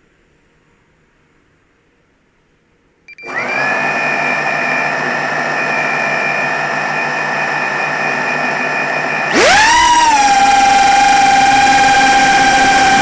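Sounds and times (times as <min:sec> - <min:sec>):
drone propellers whining: 0:03.2 - 0:13.0.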